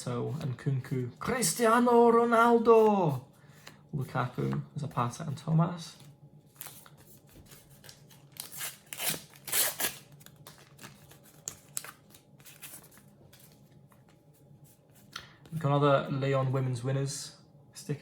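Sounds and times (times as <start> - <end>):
wrapper tearing and rustling: 7.8 - 13.1.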